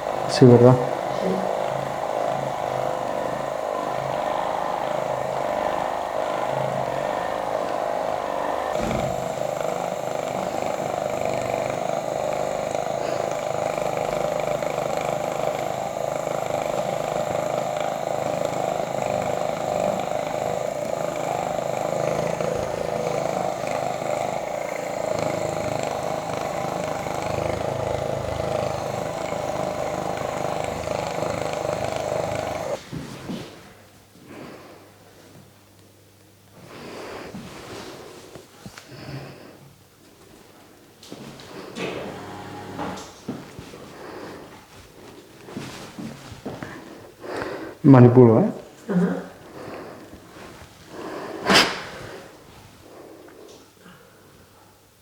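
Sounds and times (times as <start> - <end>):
small motor buzzing: 0.0 - 33.5, 41.1 - 44.5.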